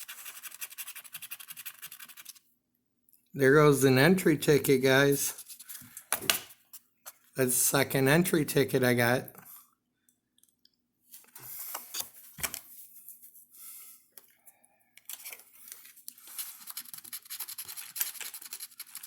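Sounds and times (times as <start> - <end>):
scratching lottery ticket: 0.0 - 2.4, 16.2 - 19.0.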